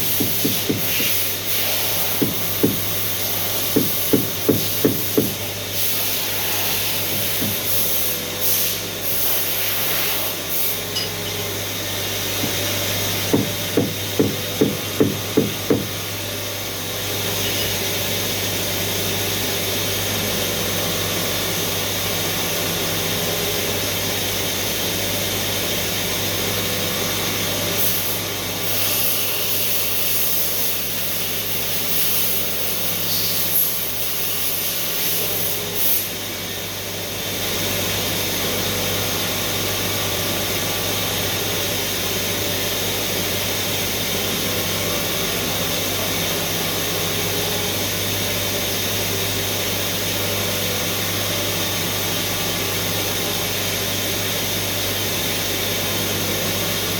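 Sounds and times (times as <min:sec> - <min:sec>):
machine humming: 0:10.5 - 0:19.6.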